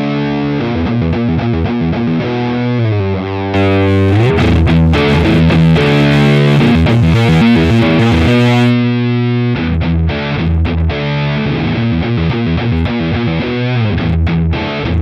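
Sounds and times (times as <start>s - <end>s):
distorted electric guitar: 0.0s - 15.0s.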